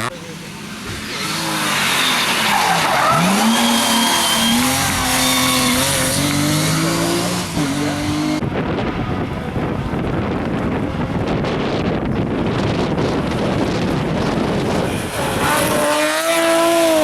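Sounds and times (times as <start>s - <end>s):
rally car engine revving: 0.0s - 17.0s
tyre and road noise: 0.0s - 17.0s
tyre squeal: 1.0s - 6.3s
wind noise: 3.1s - 17.0s.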